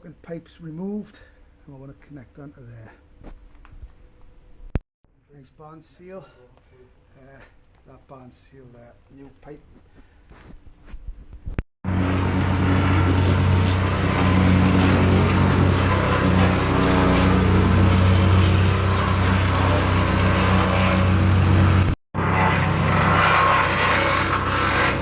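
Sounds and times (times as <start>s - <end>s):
small petrol engine running: 11.9s - 25.0s.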